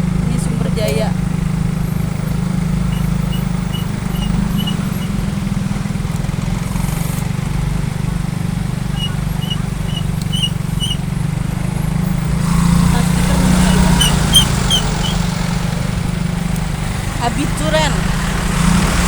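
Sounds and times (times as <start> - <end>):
bus engine idling: 0.0 - 19.0
faint high chirps: 2.7 - 5.2, 8.9 - 11.1, 13.5 - 15.3.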